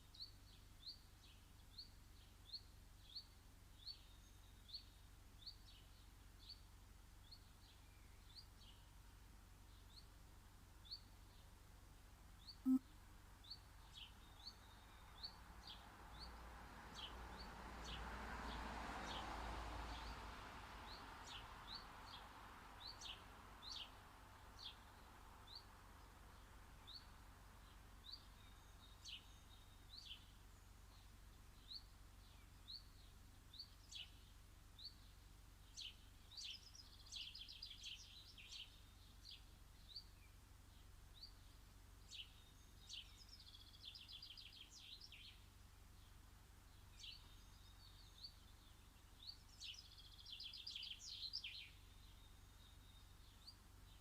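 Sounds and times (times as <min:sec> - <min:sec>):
bird chirping: 0:12.4 - 0:18.0, 0:24.6 - 0:54.0.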